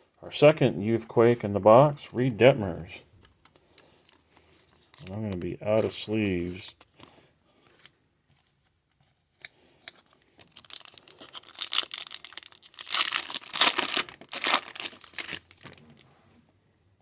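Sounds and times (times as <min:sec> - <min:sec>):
foil wrapper tearing and crinkling: 0:10.2 - 0:16.0.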